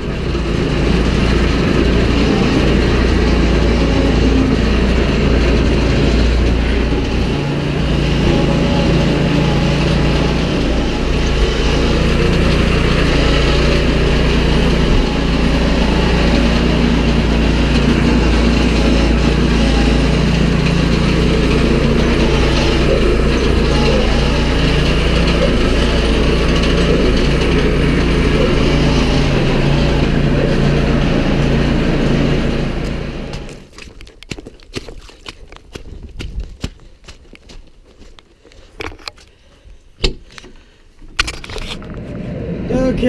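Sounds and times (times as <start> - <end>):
feeder wagon mechanism working: 0.0 - 34.2
tractor engine running: 0.0 - 39.4, 40.2 - 43.0.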